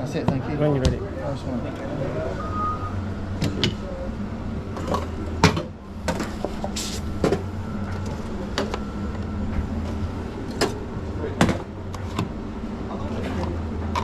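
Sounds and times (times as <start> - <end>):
low machine hum: 0.0 - 14.0
short hiss: 6.8 - 7.2.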